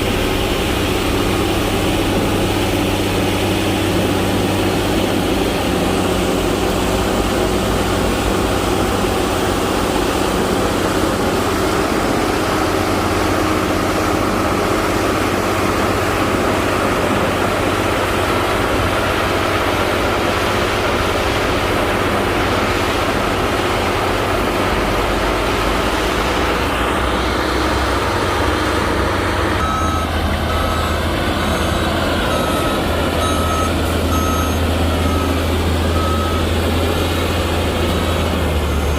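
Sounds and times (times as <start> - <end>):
heavy diesel engine running: 0.0 - 38.9
reversing alarm beeping: 29.5 - 38.9.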